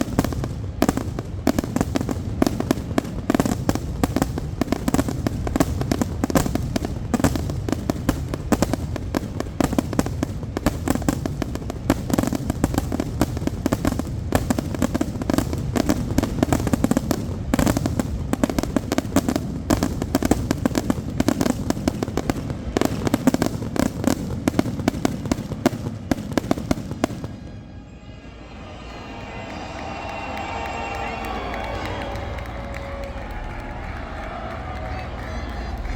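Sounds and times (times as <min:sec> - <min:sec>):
fireworks bangs and crackles: 0:00.0 - 0:27.6, 0:28.7 - 0:35.9
continuous low rumble: 0:31.2 - 0:35.9.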